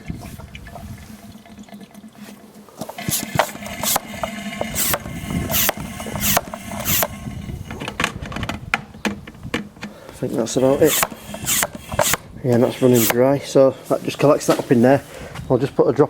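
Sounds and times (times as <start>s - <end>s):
vacuum pump slurping fuel: 0.0s - 8.2s, 10.3s - 13.7s.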